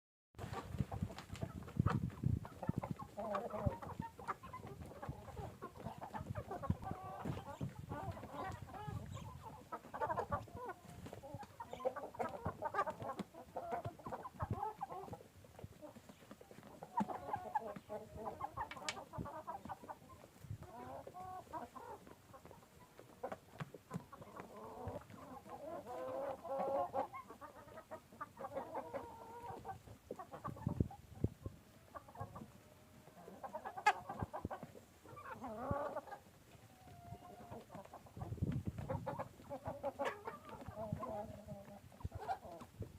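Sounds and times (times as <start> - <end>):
chickens clucking: 0.4 - 42.9.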